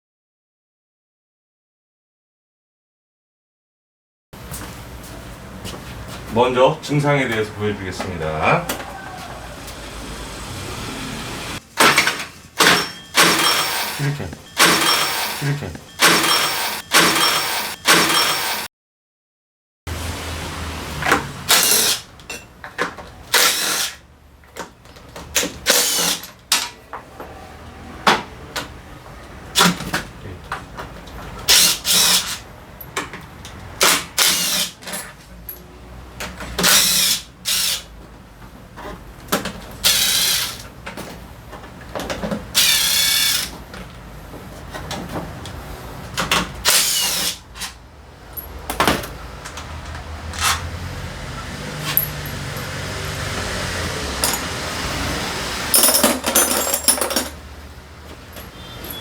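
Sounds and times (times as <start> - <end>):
scooter starter motor whirring: 11.8 - 18.7.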